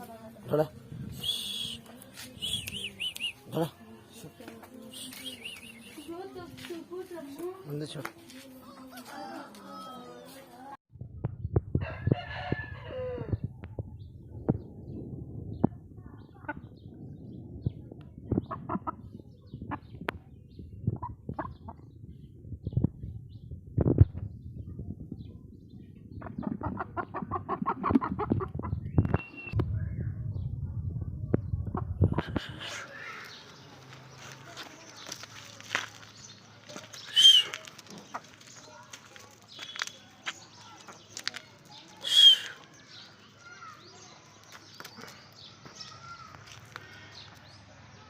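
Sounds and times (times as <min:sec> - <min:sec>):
chicken clucking rapidly: 0:18.3 - 0:19.9, 0:20.9 - 0:21.9, 0:26.2 - 0:29.2.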